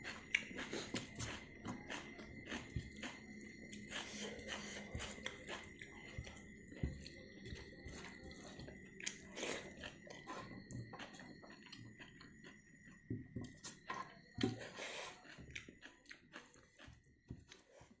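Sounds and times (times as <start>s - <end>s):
chewing food: 0.0s - 18.0s.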